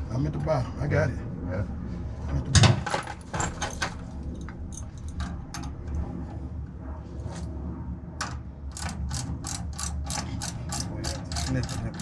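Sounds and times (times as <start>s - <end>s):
steady low hum: 0.0s - 12.0s
hand tools clicking and knocking: 8.2s - 12.0s
ratchet wrench clicking: 8.7s - 12.0s.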